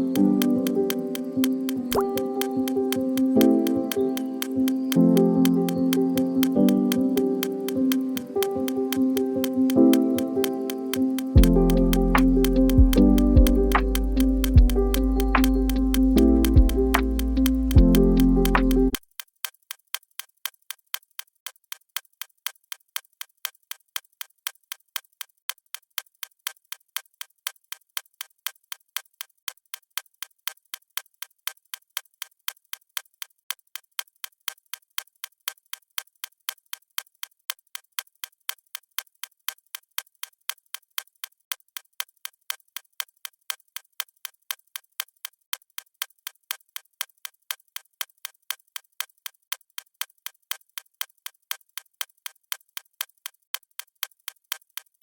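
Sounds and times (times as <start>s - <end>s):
clock ticking: 0.0s - 55.0s.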